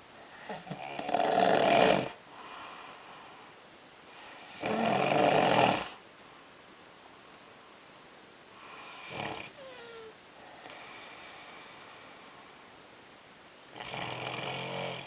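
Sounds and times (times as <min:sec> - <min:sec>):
person snoring loudly: 0:00.5 - 0:02.2, 0:04.5 - 0:06.0, 0:09.0 - 0:10.1, 0:13.7 - 0:15.0
quiet breathing: 0:02.1 - 0:04.9, 0:05.8 - 0:13.0.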